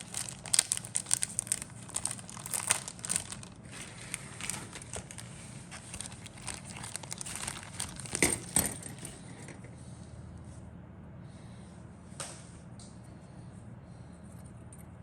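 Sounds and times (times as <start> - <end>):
plastic packaging crinkling: 0.0 - 9.4
low steady hum: 0.0 - 15.0.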